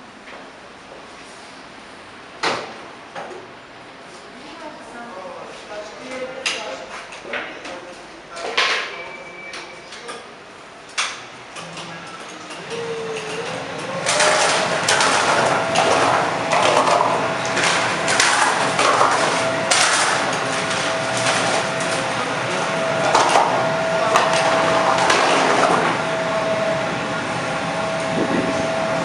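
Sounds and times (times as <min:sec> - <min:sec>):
suction fan whining: 0:07.5 - 0:29.0
litter rattling in sweeper: 0:12.6 - 0:26.1.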